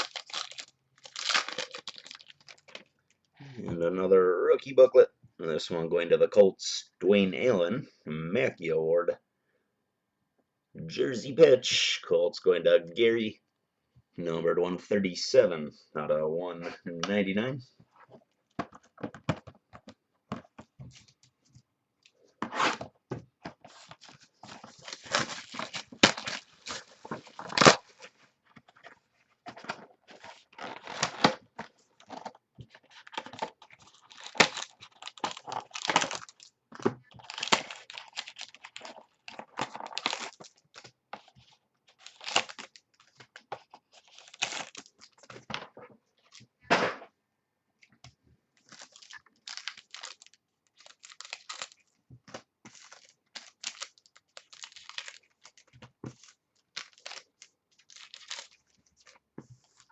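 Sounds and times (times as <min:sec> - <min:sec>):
packaging tearing: 0:00.0 - 0:02.9, 0:24.4 - 0:27.9, 0:32.9 - 0:36.5, 0:37.1 - 0:40.9, 0:41.9 - 0:43.1, 0:43.9 - 0:45.2, 0:48.7 - 0:51.8, 0:52.7 - 0:59.2
plastic crinkling: 0:00.0 - 0:03.2, 0:23.7 - 0:45.3, 0:48.6 - 0:52.0, 0:52.7 - 0:59.9
cardboard rustling: 0:22.4 - 0:46.4.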